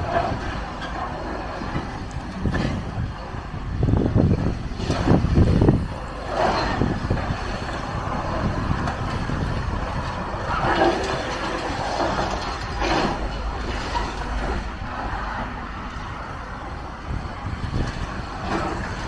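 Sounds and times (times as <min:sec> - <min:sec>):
diesel machinery rumble: 0:00.0 - 0:19.0
rubble crunching and scraping: 0:03.8 - 0:15.0.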